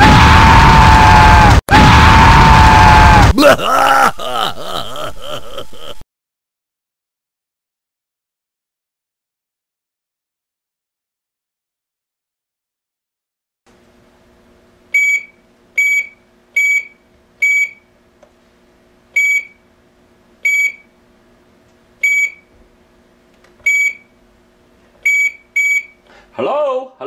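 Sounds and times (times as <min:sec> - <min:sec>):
faint electrical hum: 0:03.0 - 0:06.0, 0:13.7 - 0:27.0.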